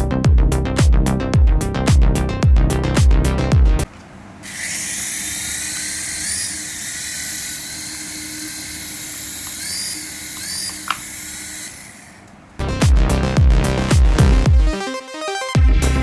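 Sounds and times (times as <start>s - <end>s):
small electric motors whining: 4.4s - 12.6s.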